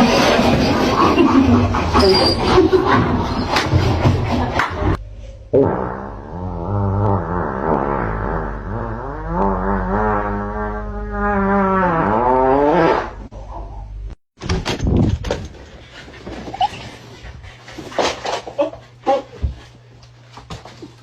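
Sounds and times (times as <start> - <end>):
long wavering fart: 0.0 - 13.4.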